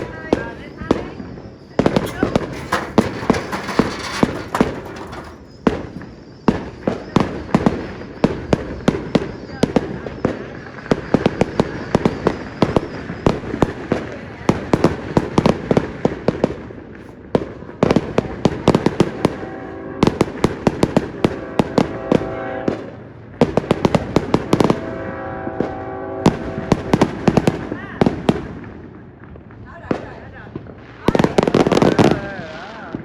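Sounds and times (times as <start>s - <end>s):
firecrackers cracking: 0.0s - 19.4s, 26.3s - 33.0s.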